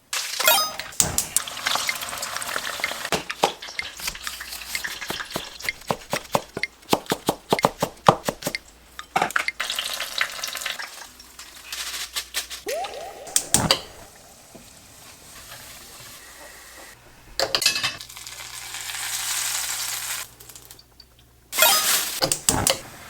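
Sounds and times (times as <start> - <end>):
food sizzling in a pan: 1.2 - 4.0, 9.6 - 17.0, 18.0 - 20.4.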